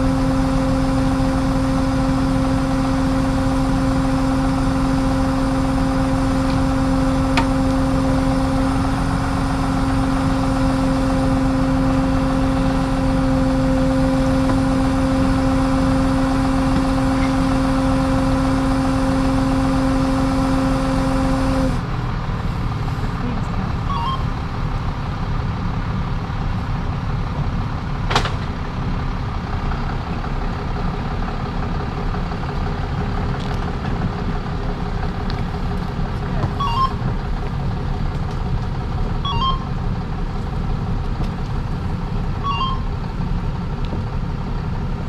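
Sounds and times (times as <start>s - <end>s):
hydraulic winch whine: 0.0s - 23.1s
truck engine rumble: 0.0s - 45.0s.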